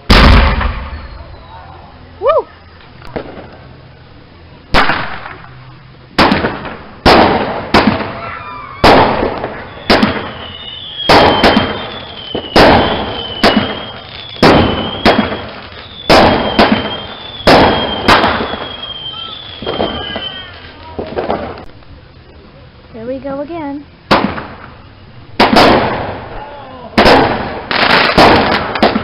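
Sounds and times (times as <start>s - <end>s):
fireworks bangs with crackle: 0.0s - 1.5s, 3.0s - 3.7s, 4.7s - 21.7s, 24.1s - 29.0s
thin whistling tones: 0.9s - 2.8s, 9.6s - 20.7s.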